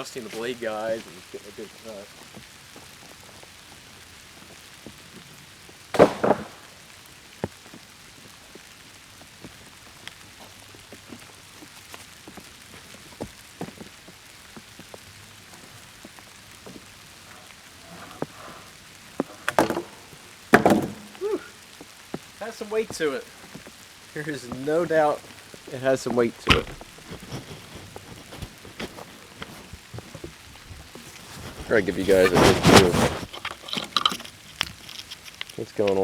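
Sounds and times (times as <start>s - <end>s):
rain falling: 0.0s - 36.0s
heavy knocks: 20.5s - 21.2s, 26.4s - 27.6s
drops tapping: 26.0s - 30.4s.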